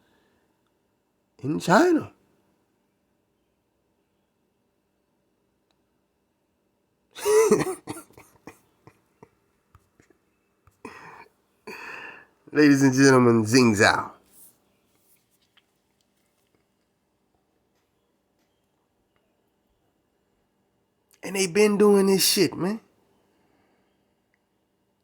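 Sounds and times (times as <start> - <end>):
man coughing: 7.2 - 8.6, 10.9 - 12.1
short breath: 10.9 - 12.4.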